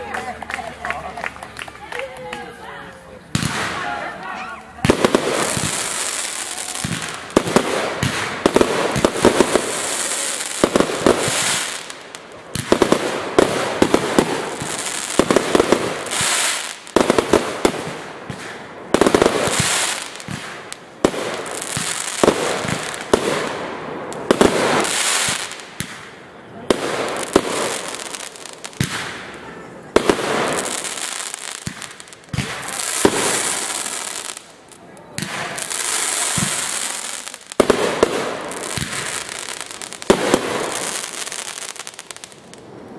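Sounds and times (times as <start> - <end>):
high hissing crackle: 8.2 - 12.4.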